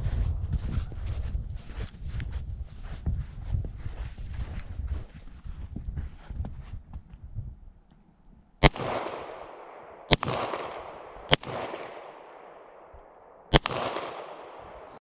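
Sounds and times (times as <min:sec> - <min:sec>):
gunshots with echo: 0:08.6 - 0:15.0.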